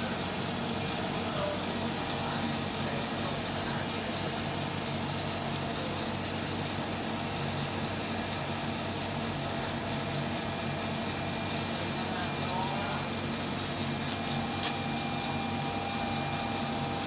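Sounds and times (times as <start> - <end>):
lathe machine drone: 8.6 - 17.0.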